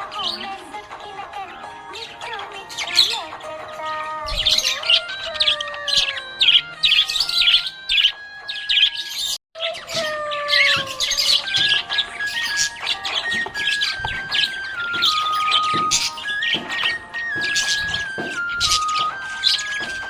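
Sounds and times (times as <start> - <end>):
budgerigar chirping and warbling: 0.0 - 20.0
melody of held stepping tones: 10.6 - 20.0.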